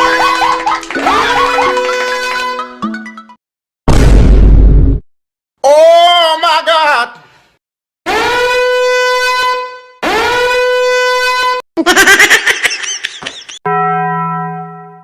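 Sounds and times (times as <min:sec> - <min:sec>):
horn-like blasts: 0:08.1 - 0:11.6.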